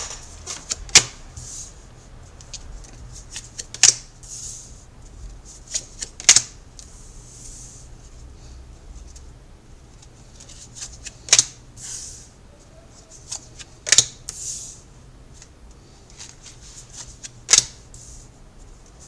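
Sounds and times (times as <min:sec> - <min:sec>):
card snaps: 0:17.5 - 0:17.8.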